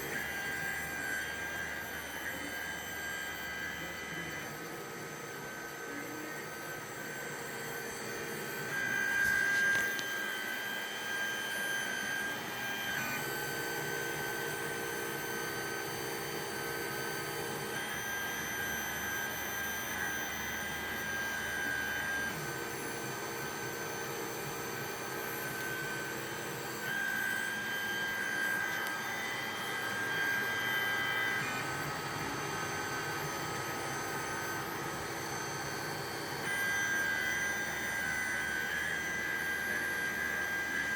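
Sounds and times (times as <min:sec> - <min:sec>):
stepper motors whining: 0:00.0 - 0:40.9.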